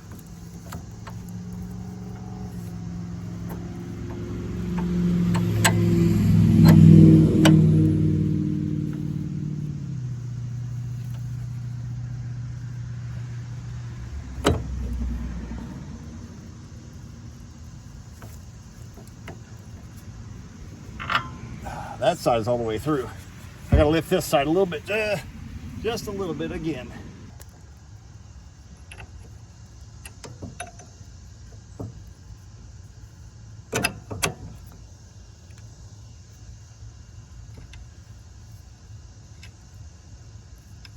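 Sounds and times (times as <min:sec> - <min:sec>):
low machine hum: 0:00.7 - 0:27.4
light clicks and knocks: 0:03.2 - 0:07.6
sharp metal clanks: 0:20.7 - 0:22.0.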